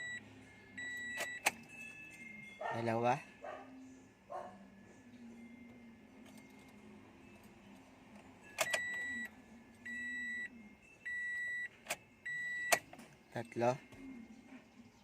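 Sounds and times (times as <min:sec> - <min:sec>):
dashboard warning chime beeping: 0:00.0 - 0:03.5, 0:05.1 - 0:14.4
ignition key click: 0:08.6 - 0:09.3, 0:11.8 - 0:13.0.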